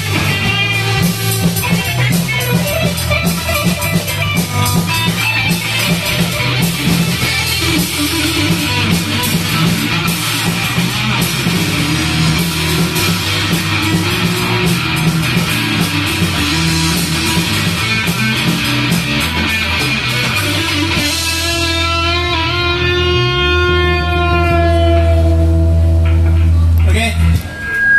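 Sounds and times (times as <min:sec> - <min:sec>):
rock band playing: 0:00.0 - 0:27.9
guitar chord ringing out: 0:21.9 - 0:26.8.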